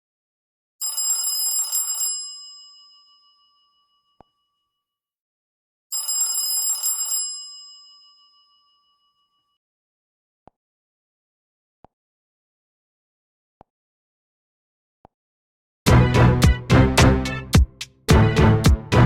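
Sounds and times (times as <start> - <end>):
phone ringing like telephone bell: 0.8 - 4.8, 5.9 - 9.6.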